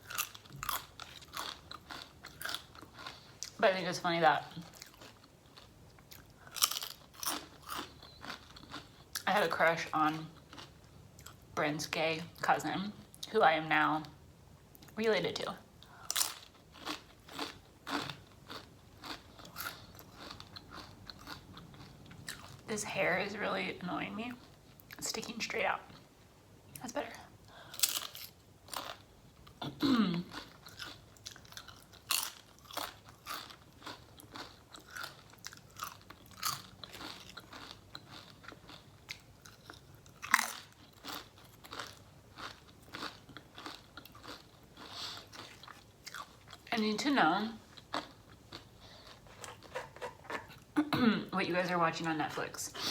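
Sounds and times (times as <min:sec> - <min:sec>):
chewing crunchy food: 0:00.0 - 0:03.6, 0:04.4 - 0:11.5, 0:15.8 - 0:22.7, 0:27.5 - 0:46.8, 0:47.6 - 0:50.8.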